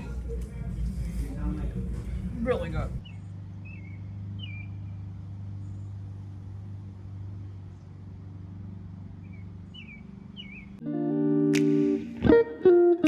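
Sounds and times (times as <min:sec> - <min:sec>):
engine humming: 0:00.0 - 0:11.1
high bird-like chirps: 0:09.3 - 0:10.8.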